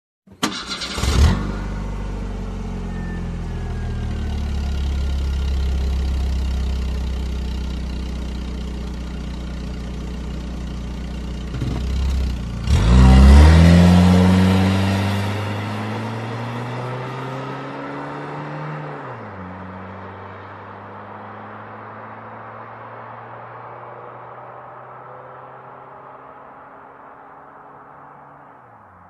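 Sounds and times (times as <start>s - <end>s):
car engine starting and idling: 0.3s - 19.8s
car engine revving: 0.4s - 23.8s.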